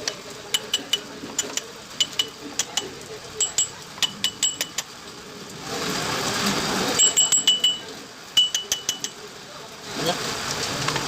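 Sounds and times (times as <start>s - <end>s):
metal tools clinking: 3.4s - 4.8s, 7.0s - 9.2s.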